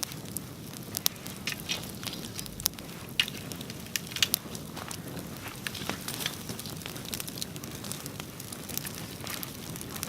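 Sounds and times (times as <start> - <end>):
bonfire crackling: 0.0 - 10.0
low rush of flame: 0.0 - 10.0
sharp pops: 0.8 - 8.1.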